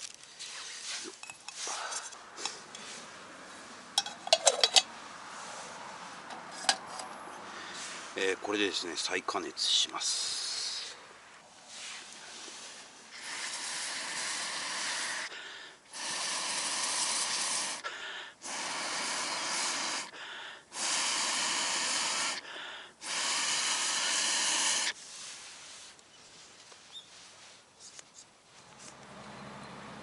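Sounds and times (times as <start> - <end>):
person blowing air: 11.8 - 25.3.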